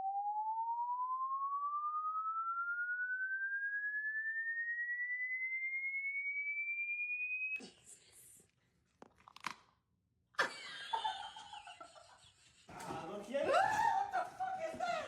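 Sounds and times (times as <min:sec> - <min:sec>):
rising electronic tone: 0:00.0 - 0:07.6.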